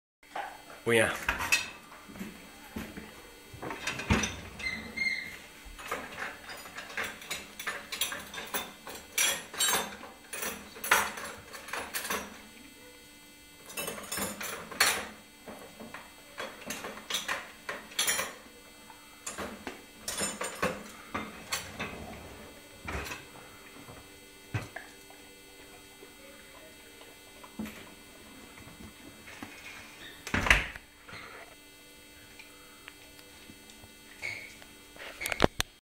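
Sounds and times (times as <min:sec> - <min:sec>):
plates and cutlery clinking: 0:01.3 - 0:01.8, 0:03.6 - 0:12.4, 0:13.7 - 0:18.4, 0:19.2 - 0:23.3.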